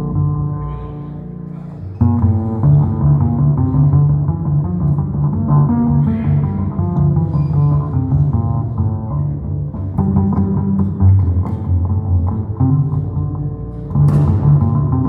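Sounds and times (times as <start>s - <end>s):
plucked upright bass: 0.0s - 15.0s.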